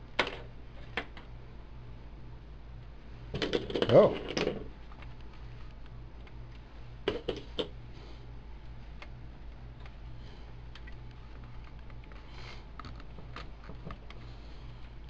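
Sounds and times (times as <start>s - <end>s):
steady low hum: 0.0s - 15.0s
computer parts clicking and tapping: 10.7s - 14.2s.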